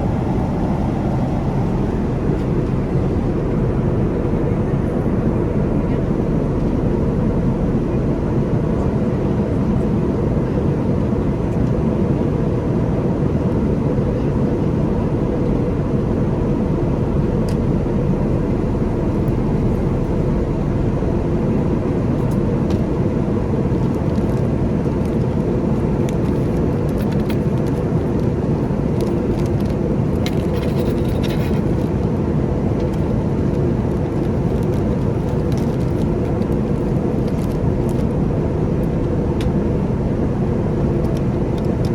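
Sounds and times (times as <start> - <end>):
aircraft cabin engine rush: 0.0 - 41.9
faint clicks and rattles: 23.8 - 32.1, 32.7 - 38.2.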